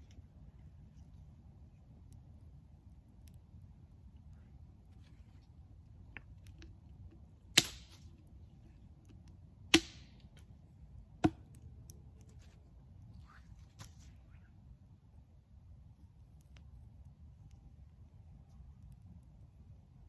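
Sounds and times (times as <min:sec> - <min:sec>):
dry sticks snapping: 0:07.5 - 0:08.3, 0:09.1 - 0:10.5.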